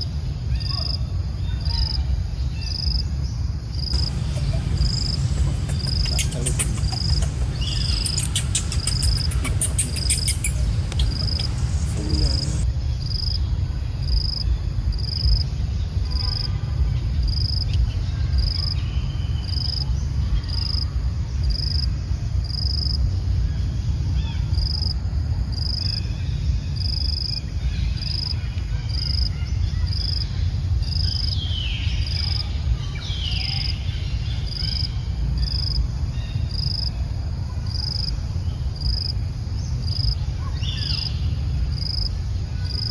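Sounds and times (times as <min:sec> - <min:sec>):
constant low rumble: 0:00.0 - 0:42.9
insect chirping: 0:03.7 - 0:13.4
brief falling calls: 0:04.0 - 0:12.6.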